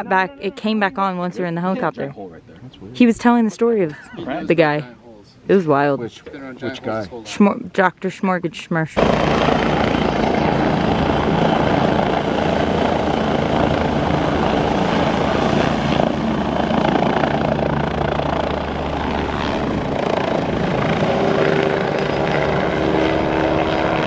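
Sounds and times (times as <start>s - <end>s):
helicopter flyby: 9.0s - 24.0s
steady whine: 9.0s - 24.0s.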